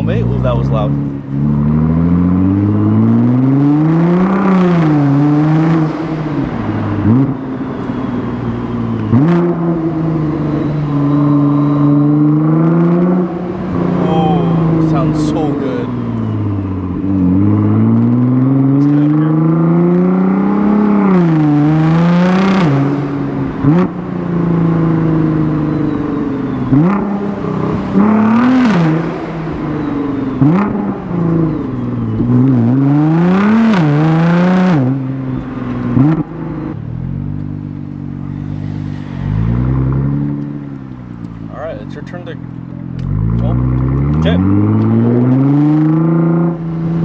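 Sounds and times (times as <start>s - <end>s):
car engine accelerating hard: 0.0s - 47.0s
exhaust cracks on gear shifts: 39.9s - 45.3s.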